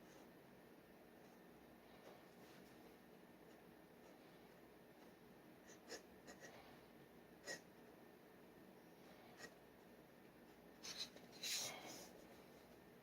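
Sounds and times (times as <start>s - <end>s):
dip pen scratching on paper: 5.6s - 6.5s, 7.4s - 7.6s.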